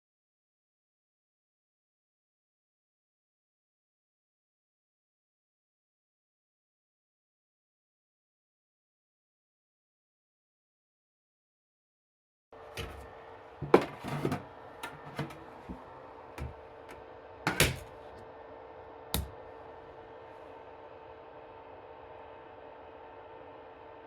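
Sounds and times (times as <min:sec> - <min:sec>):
steady hum: 0:12.6 - 0:24.0.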